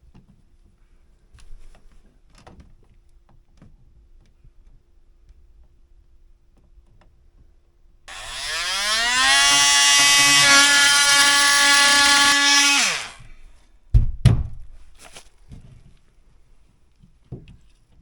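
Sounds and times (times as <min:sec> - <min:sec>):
power tool whining: 0:08.1 - 0:13.3.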